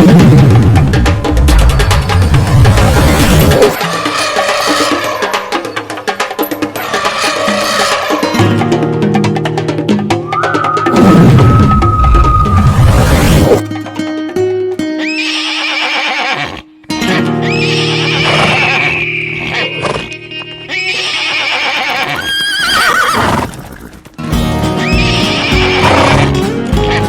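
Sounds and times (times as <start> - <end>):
background music with low notes: 0.0 - 12.8, 24.2 - 27.0
horse whinnies: 15.0 - 16.7, 17.4 - 24.1, 24.8 - 26.4.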